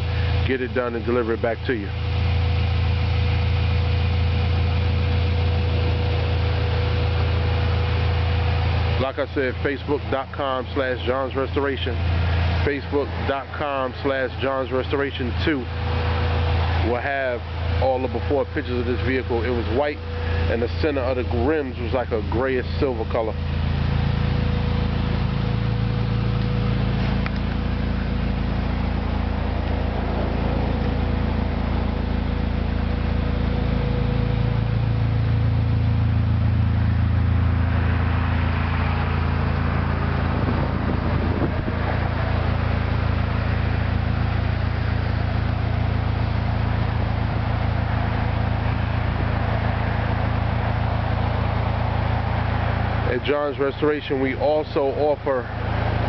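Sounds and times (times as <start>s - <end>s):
vehicle engine running: 0.0s - 56.0s
wind on microphone: 40.4s - 41.9s.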